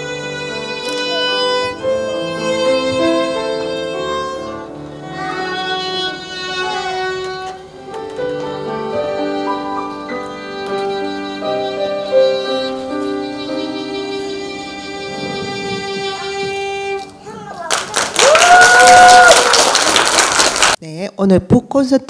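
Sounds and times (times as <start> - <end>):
violin melody with vibrato: 0.0 - 17.6.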